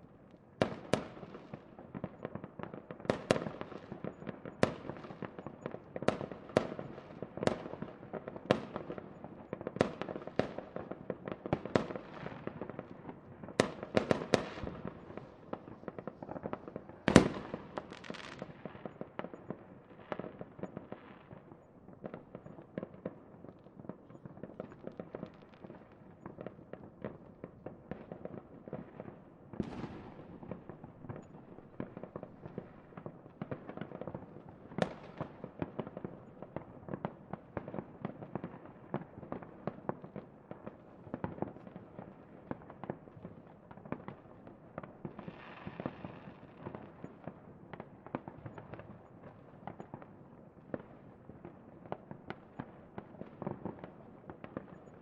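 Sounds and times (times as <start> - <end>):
fireworks crackling and popping: 0.4 - 55.0
loud firework bangs: 14.0 - 18.6.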